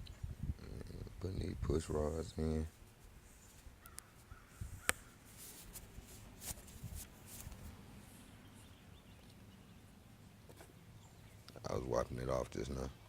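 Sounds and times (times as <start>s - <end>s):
rubbing strokes: 2.7s - 8.7s.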